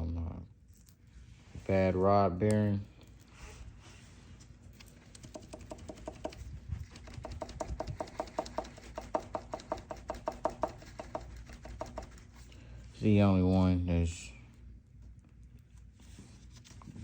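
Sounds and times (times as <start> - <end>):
engine rod knocking: 7.2 - 12.1.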